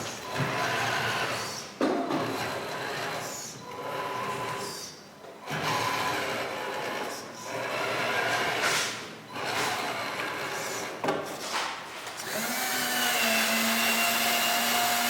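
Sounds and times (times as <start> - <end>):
small electric motors whirring: 12.2 - 15.0.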